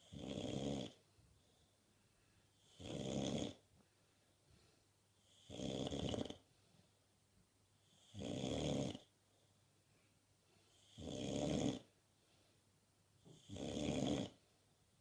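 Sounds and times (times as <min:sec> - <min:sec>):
dog snoring: 0:00.0 - 0:01.0, 0:02.6 - 0:03.6, 0:05.2 - 0:06.5, 0:07.8 - 0:09.1, 0:10.7 - 0:11.9, 0:13.2 - 0:14.5.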